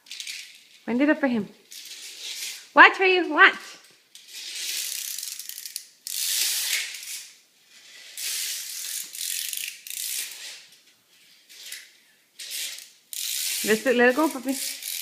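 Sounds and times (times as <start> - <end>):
wind-up toy ratchet clicking: 4.4 - 7.3, 8.2 - 10.6, 12.4 - 15.0.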